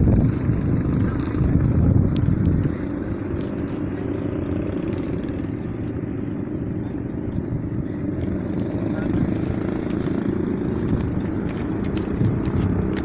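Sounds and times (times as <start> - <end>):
moving vehicle rumble: 0.0 - 13.0.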